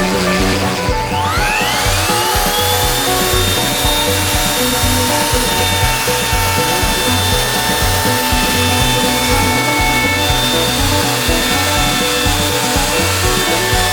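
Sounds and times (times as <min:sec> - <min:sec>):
background music with steady beat: 0:00.0 - 0:13.9
power tool motor whining: 0:00.0 - 0:13.9.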